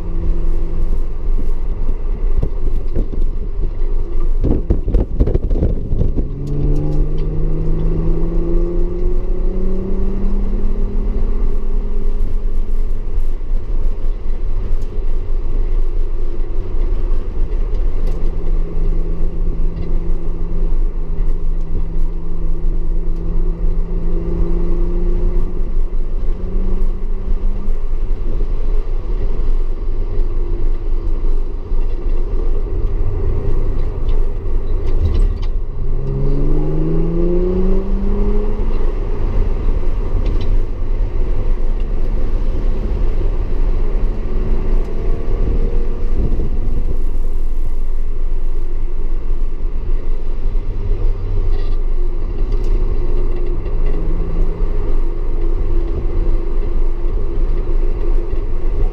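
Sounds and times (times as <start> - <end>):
car engine pulling hard: 0.0 - 58.9
road and wind noise: 0.0 - 58.9.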